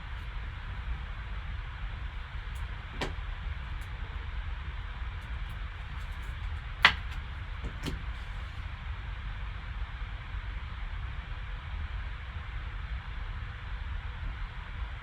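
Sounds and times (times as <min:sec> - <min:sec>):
low hum and hiss: 0:00.0 - 0:15.0
cards clicking and tapping: 0:05.9 - 0:08.3.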